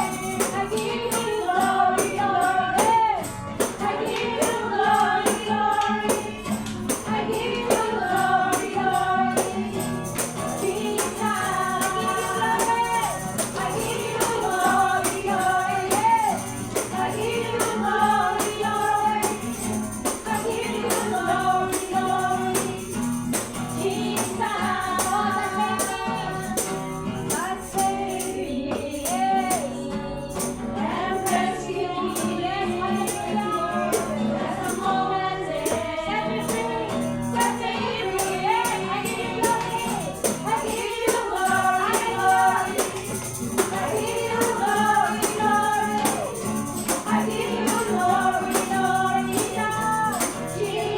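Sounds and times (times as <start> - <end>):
high percussion beat: 0.0 - 1.3, 38.3 - 50.6
people singing a worship song: 0.0 - 50.9.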